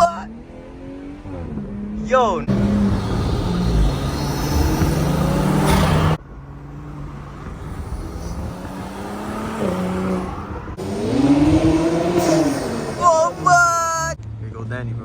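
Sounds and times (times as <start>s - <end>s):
car engine running under load: 2.5s - 13.5s.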